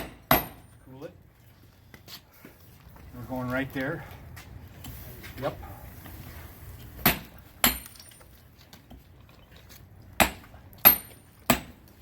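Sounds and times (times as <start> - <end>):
hammer striking chisel on hot iron: 0.0 - 0.6, 7.0 - 8.0, 10.2 - 11.7.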